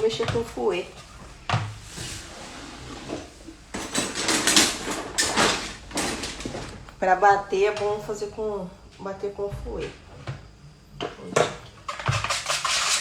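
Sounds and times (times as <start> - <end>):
whisk scraping in bowl: 11.9 - 13.0.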